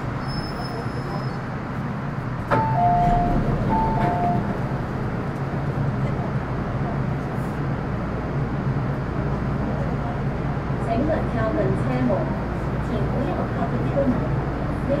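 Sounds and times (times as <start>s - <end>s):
train equipment hum: 0.0s - 15.0s
two-tone door chime: 2.5s - 4.5s.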